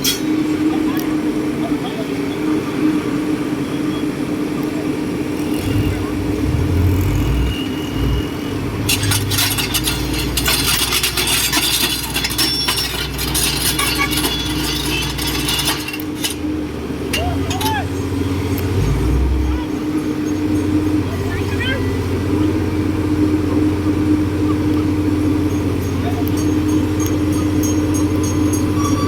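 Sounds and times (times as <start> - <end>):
diesel engine running: 4.1 - 29.0
deep rumble: 5.6 - 10.5
metallic clanking and rattling: 5.6 - 16.5.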